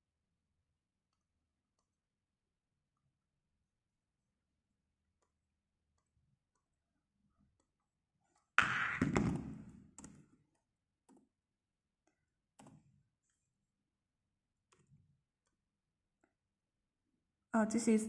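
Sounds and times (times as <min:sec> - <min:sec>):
sudden thump: 0:08.6 - 0:09.7.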